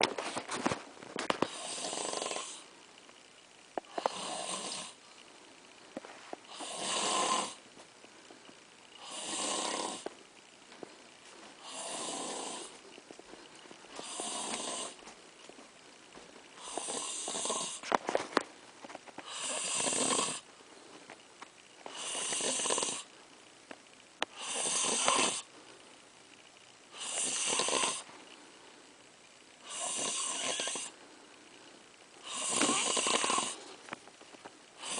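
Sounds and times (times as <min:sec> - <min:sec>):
slow hissy snoring: 0:01.2 - 0:02.9, 0:03.8 - 0:07.7, 0:08.8 - 0:10.2, 0:11.0 - 0:15.2, 0:16.1 - 0:18.2, 0:19.1 - 0:23.3, 0:24.2 - 0:25.8, 0:26.8 - 0:29.0, 0:29.6 - 0:34.0.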